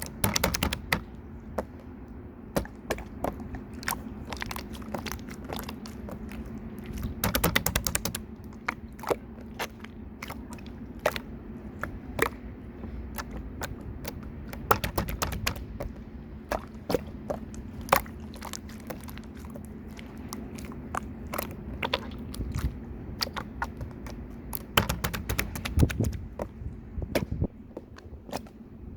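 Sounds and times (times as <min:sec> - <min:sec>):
slime clicking and popping: 0:00.0 - 0:01.0, 0:07.2 - 0:08.2, 0:23.2 - 0:26.2
faint steady hum: 0:00.0 - 0:28.9.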